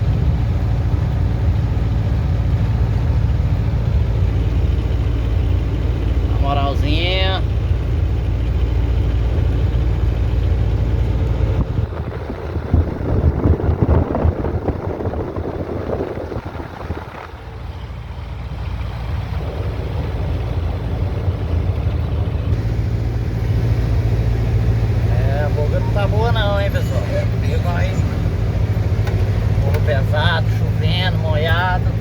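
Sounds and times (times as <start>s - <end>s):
vehicle engine hum: 0.0s - 32.0s
bumping and rattling: 7.4s - 32.0s.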